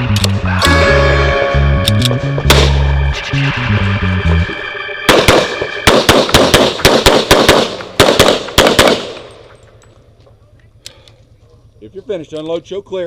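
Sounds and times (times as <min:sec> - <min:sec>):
rapid pistol fire: 0:05.1 - 0:09.3.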